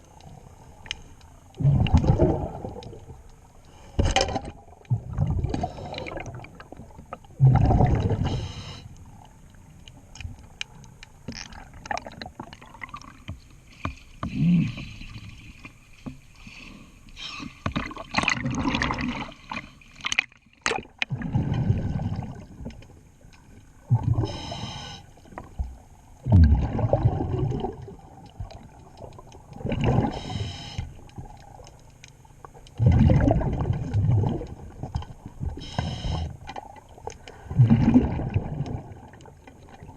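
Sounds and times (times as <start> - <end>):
bubbles gurgling underwater: 1.6 - 3.2, 4.6 - 8.4, 17.8 - 19.3, 20.9 - 22.8, 26.2 - 30.2, 32.8 - 35.6, 37.5 - 39.9
hissing breaths through regulator: 8.2 - 9.0, 24.2 - 25.1, 30.1 - 31.0, 35.6 - 36.4.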